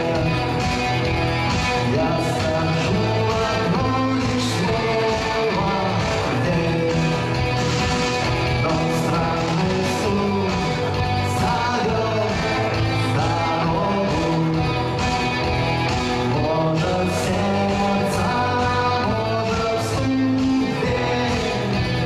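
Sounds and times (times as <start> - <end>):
person singing: 0.0 - 22.0
rock or pop music with guitar: 0.0 - 22.0.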